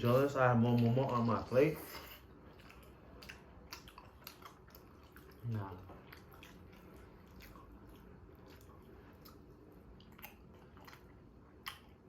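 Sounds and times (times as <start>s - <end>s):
low room hum: 0.0s - 12.0s
people chewing: 0.0s - 12.0s.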